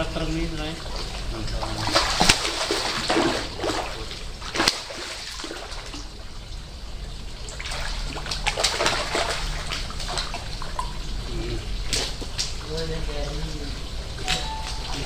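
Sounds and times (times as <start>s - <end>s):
pond water splashing: 0.8s - 6.2s, 7.4s - 11.1s.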